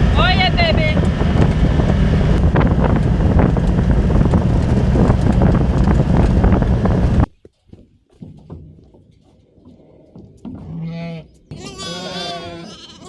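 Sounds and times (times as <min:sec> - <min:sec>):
vehicle engine running: 0:00.0 - 0:07.3
wind buffeting microphone: 0:00.0 - 0:07.3
rattles and knocks: 0:00.9 - 0:10.8.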